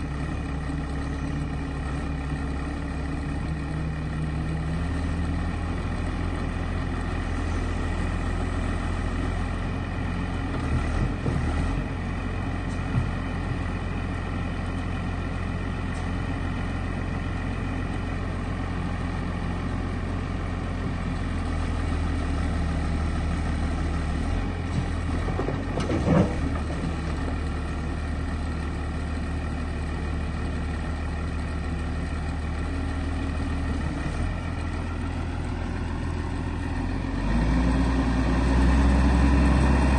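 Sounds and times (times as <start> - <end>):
diesel engine running: 0.0 - 39.9
knocks and clunks: 12.7 - 13.8, 24.7 - 27.3.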